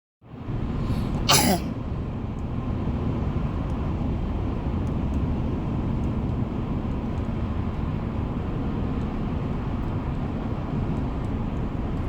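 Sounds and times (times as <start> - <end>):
short sharp cough: 1.3 - 1.7.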